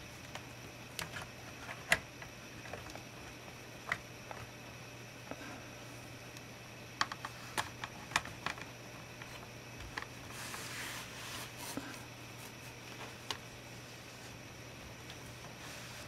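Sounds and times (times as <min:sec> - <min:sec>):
steady low hum: 0:00.0 - 0:16.0
soft rustle: 0:10.2 - 0:16.0.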